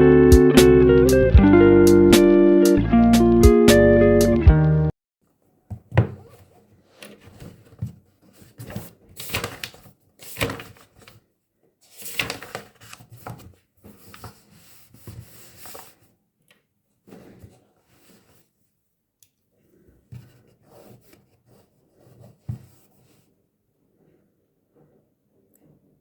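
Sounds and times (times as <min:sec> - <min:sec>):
rustling: 0:05.8 - 0:11.2, 0:11.8 - 0:16.2.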